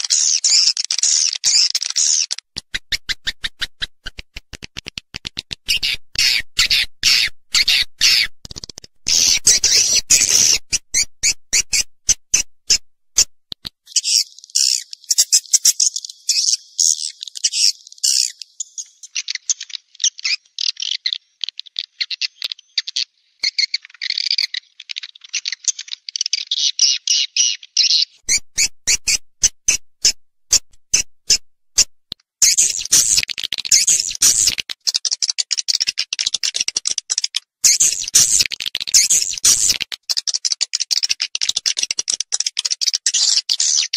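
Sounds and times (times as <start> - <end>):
rapid sharp clicks: 2.4 - 5.7, 28.9 - 34.9, 37.7 - 40.0
high twittering chirps: 5.7 - 11.9, 13.9 - 25.8, 28.1 - 29.2, 32.4 - 34.6, 37.6 - 39.8.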